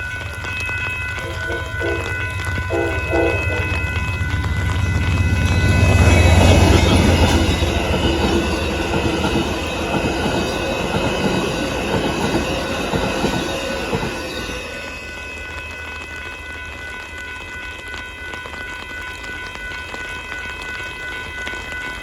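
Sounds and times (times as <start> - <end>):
diesel locomotive rumble: 0.0 - 14.7
train wheels clattering on rails: 0.0 - 22.0.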